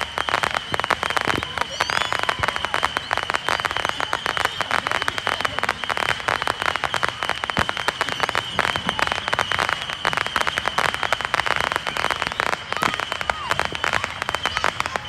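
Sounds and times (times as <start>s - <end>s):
fireworks crackling: 0.0s - 15.0s.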